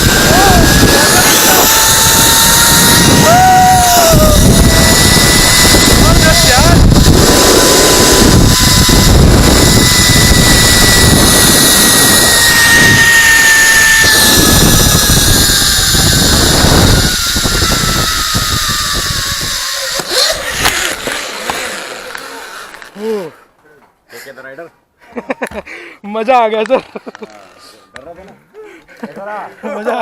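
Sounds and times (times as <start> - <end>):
wind rush on microphone: 0.0 - 19.8
zip-line pulley whine: 0.0 - 23.3, 27.2 - 28.0.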